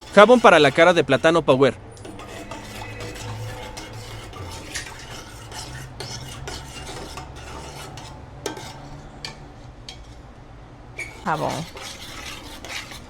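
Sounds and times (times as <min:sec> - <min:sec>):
spoon stirring in a bowl: 0:00.0 - 0:13.0.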